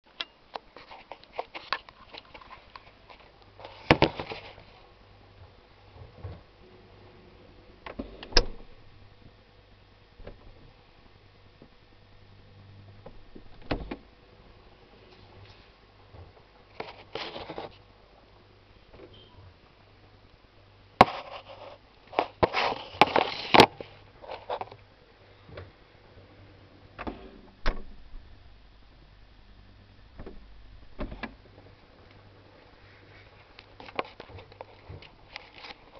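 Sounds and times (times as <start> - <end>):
low steady hum: 0.0 - 35.9
clicks and rustles of handling: 0.1 - 6.4, 15.1 - 17.9, 21.0 - 24.8, 32.0 - 35.9
refrigerator door shutting: 8.0 - 8.7, 27.0 - 28.2, 31.0 - 31.4.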